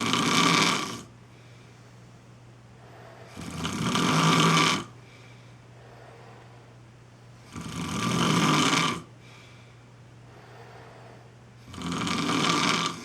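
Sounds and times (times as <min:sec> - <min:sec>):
person snoring: 0:00.0 - 0:01.1, 0:03.2 - 0:05.0, 0:07.5 - 0:09.1, 0:11.7 - 0:13.0
faint low hum: 0:00.0 - 0:13.0.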